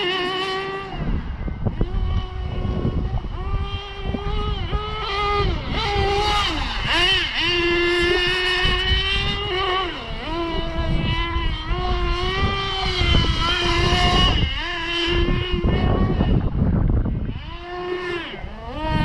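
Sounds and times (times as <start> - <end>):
small nitro engine buzzing: 0.0 - 19.0.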